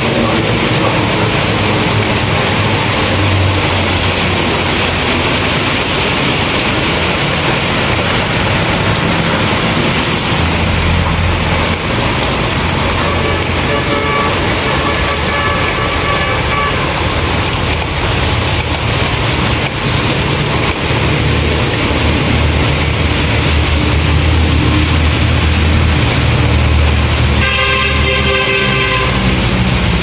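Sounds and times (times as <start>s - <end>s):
steady rain: 0.0s - 30.0s
street traffic rumble: 0.0s - 30.0s
car horn: 13.0s - 17.2s, 27.4s - 29.4s.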